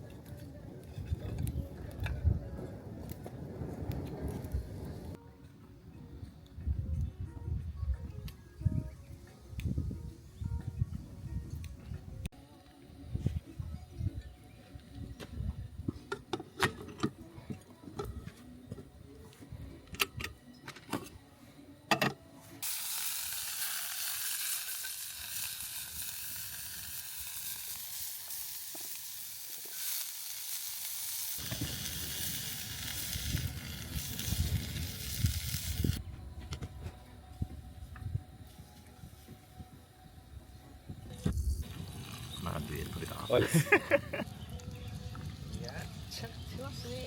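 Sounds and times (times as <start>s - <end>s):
food sizzling in a pan: 22.6s - 36.0s, 41.5s - 44.3s.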